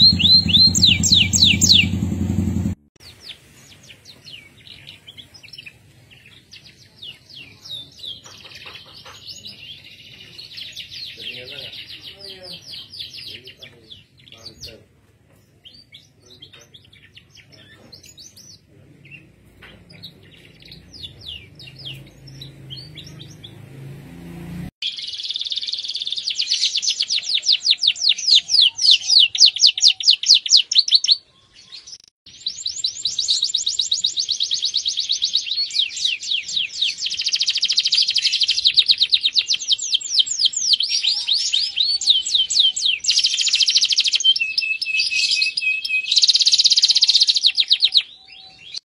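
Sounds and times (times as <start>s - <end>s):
low hum: 0.0s - 2.9s
canary singing: 0.0s - 14.8s, 15.4s - 48.8s.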